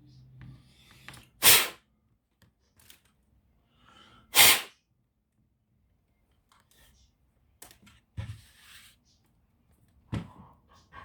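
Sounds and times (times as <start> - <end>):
sharp bursts of breath: 3.8 - 4.8.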